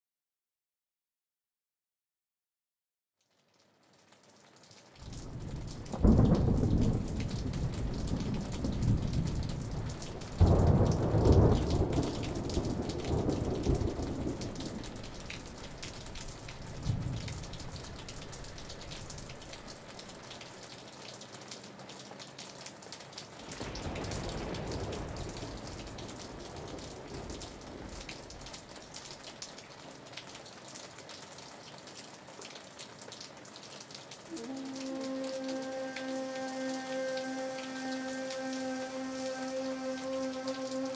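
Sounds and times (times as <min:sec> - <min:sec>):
steady rain: 0:03.2 - 0:40.9
thunder rumbling: 0:05.1 - 0:19.7, 0:23.6 - 0:28.9.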